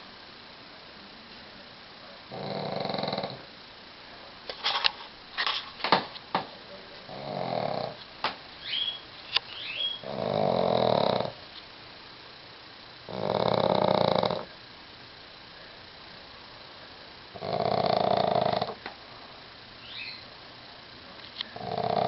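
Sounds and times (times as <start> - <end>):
dog snoring: 2.3 - 3.5, 7.1 - 8.0, 9.9 - 11.4, 13.1 - 14.5, 17.3 - 18.8, 21.5 - 22.0.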